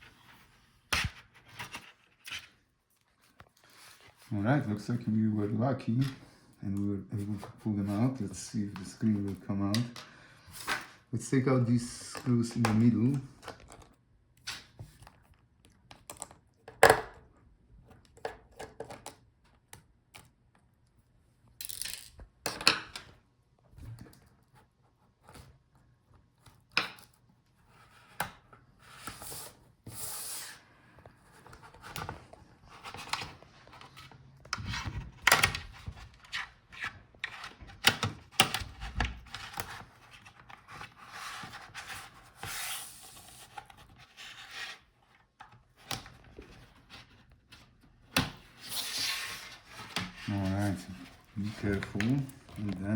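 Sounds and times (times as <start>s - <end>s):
rubbing and scraping: 48.5s - 52.9s.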